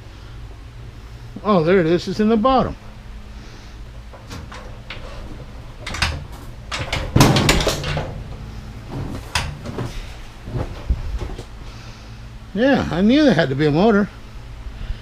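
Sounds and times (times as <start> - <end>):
metal parts knocking and rattling: 4.0 - 10.0.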